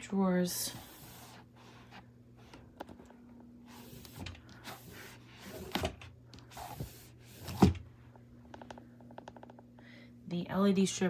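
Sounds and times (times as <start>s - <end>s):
fabric drawers sliding: 3.7s - 7.8s.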